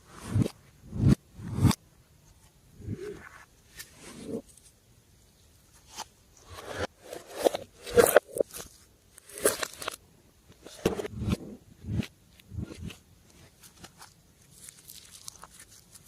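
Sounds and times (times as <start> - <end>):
slime squishing by hand: 11.2 - 16.0.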